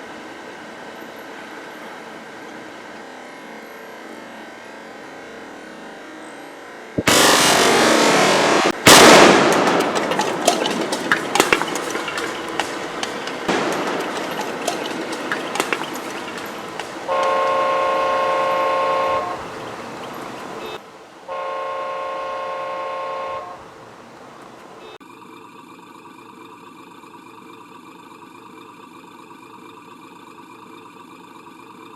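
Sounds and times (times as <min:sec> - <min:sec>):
loud explosion: 0:07.0 - 0:19.4
loud rushing noise: 0:07.0 - 0:19.6
sharp crackles and clicks: 0:07.0 - 0:20.8
horn blasts: 0:07.0 - 0:23.9.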